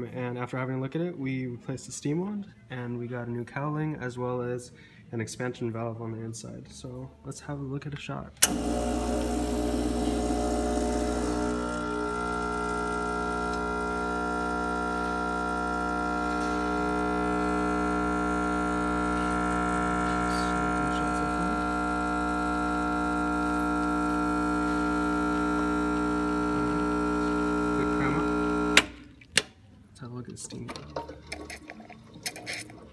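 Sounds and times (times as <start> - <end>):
espresso machine pump buzzing: 8.4 - 28.9.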